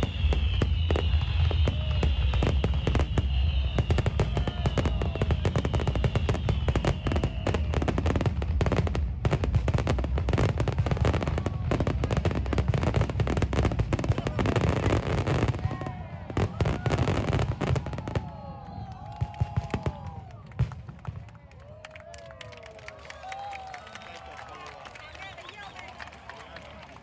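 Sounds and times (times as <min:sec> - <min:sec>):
fireworks whistling: 0:00.0 - 0:20.1
fireworks bangs and crackles: 0:00.0 - 0:22.2.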